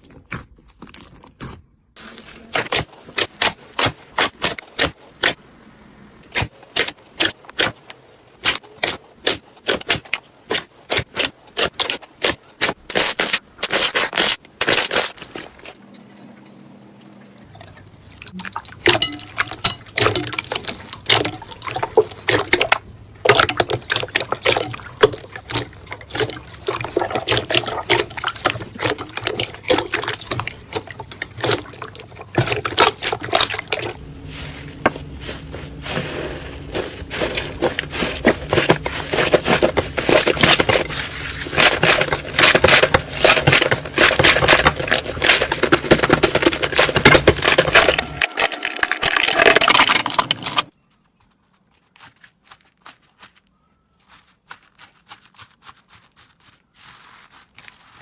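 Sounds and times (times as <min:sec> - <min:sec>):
slime squelching and popping: 0:18.3 - 0:48.4.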